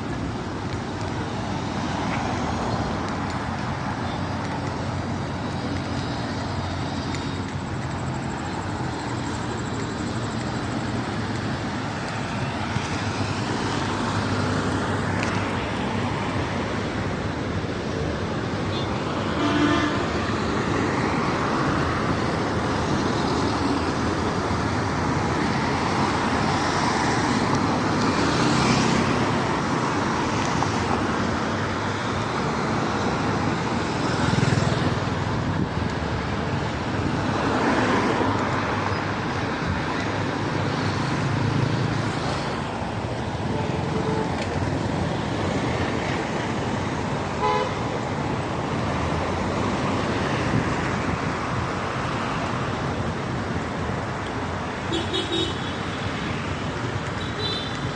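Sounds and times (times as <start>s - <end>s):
road traffic with vehicles passing: 0.0s - 57.9s
car horn toot: 47.4s - 47.8s.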